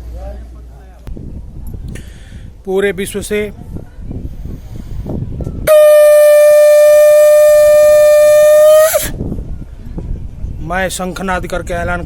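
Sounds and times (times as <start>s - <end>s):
conch shell blown: 5.6s - 9.2s.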